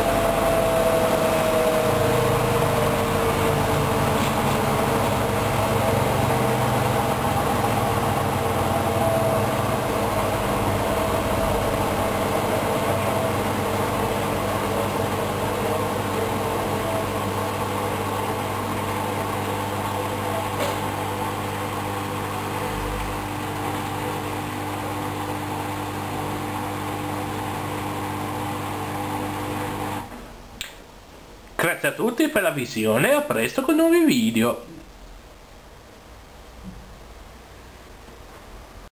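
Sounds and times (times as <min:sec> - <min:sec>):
washing machine spinning: 0:00.0 - 0:30.5.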